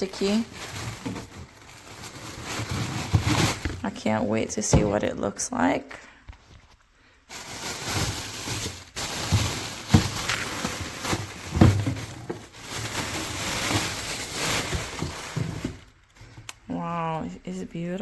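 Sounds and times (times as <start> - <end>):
packaging rustling and crinkling: 0.0 - 4.2, 6.4 - 16.5.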